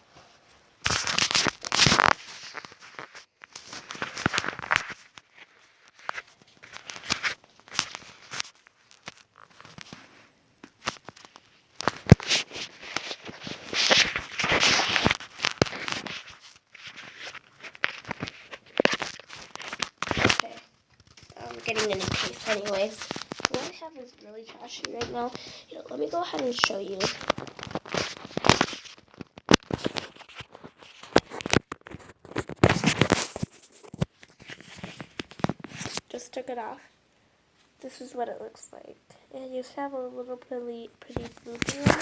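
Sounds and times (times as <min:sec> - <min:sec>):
phone case scraping: 0:12.0 - 0:20.6.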